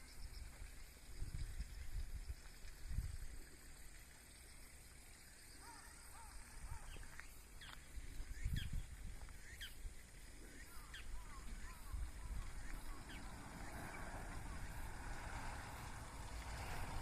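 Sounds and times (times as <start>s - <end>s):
birds calling: 10.5s - 17.0s.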